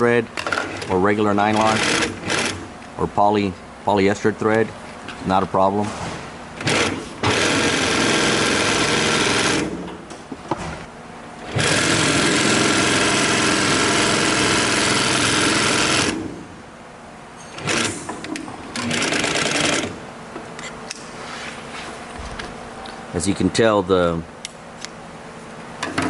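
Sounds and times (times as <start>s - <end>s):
industrial sewing machine sewing: 1.5s - 2.6s, 6.6s - 9.8s, 11.5s - 16.3s, 17.6s - 18.1s, 18.8s - 20.0s.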